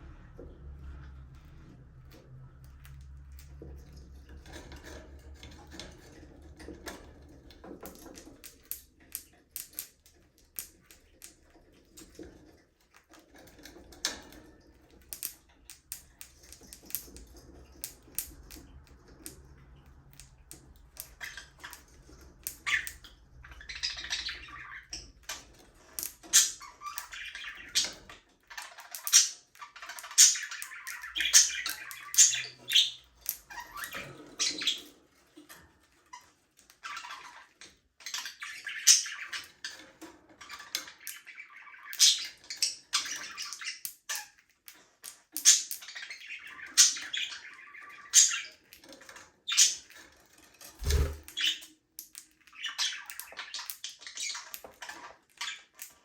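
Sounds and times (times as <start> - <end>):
budgerigars chirping and chattering: 20.2 - 35.0, 36.8 - 50.0, 50.8 - 56.0.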